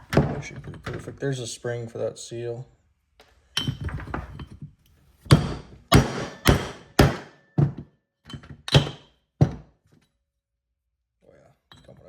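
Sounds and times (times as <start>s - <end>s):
hammer striking metal punch: 5.3s - 7.8s, 8.7s - 9.1s.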